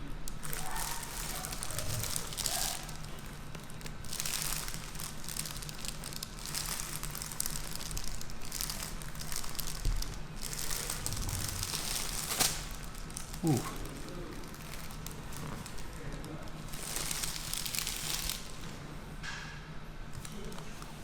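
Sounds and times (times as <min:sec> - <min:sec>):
soft rustling and crinkling: 0:00.3 - 0:19.2.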